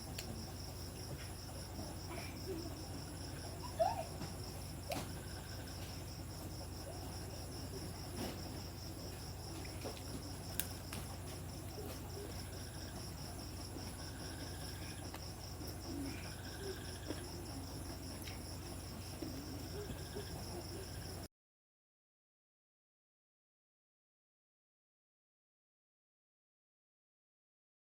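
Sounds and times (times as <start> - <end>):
crickets chirring: 0.0 - 21.3
low steady hum: 0.0 - 21.3.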